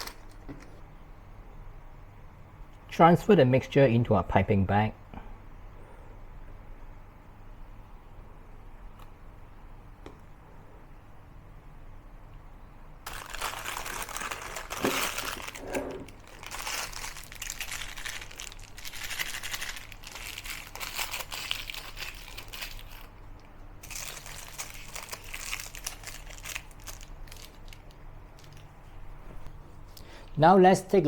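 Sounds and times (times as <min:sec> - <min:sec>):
plastic piping bag crinkling: 0:00.0 - 0:00.7, 0:13.0 - 0:29.0.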